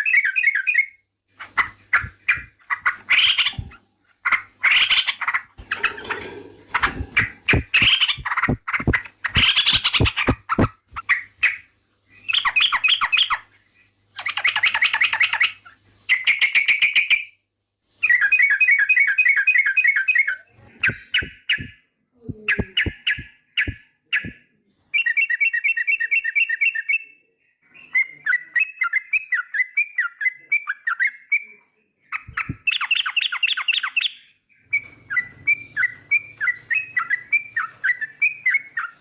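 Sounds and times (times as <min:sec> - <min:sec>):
bird singing chattering notes: 0:01.6 - 0:17.4, 0:22.4 - 0:24.4.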